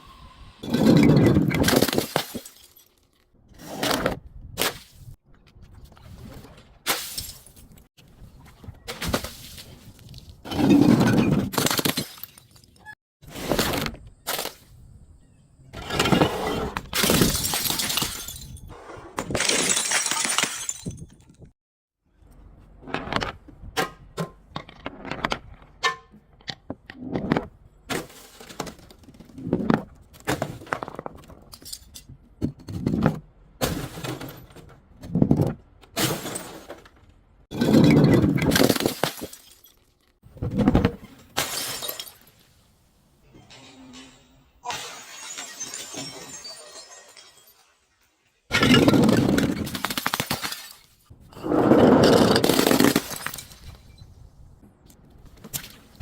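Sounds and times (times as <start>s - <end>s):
glass bottles smashing: 0.6s - 3.2s, 10.5s - 12.8s, 17.0s - 21.4s, 36.0s - 36.8s, 37.5s - 40.0s, 41.1s - 42.5s, 43.4s - 51.1s, 52.0s - 54.0s.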